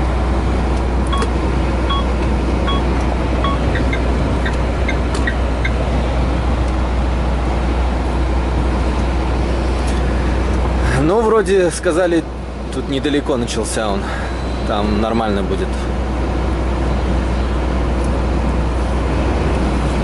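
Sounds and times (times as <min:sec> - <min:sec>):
lorry engine drone: 0:00.0 - 0:20.0
road noise: 0:00.0 - 0:20.0
short beeps: 0:01.9 - 0:02.8, 0:03.4 - 0:04.0.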